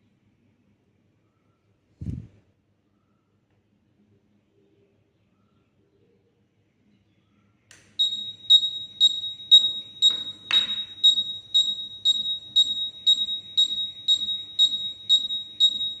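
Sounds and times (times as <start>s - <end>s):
electronic buzzer beeping: 8.0s - 16.0s.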